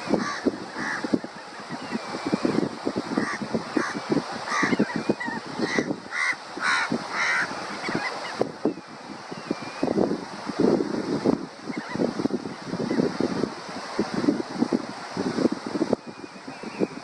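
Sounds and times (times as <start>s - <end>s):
birds calling: 0.0s - 10.2s
thin gliding whistles: 7.8s - 10.0s.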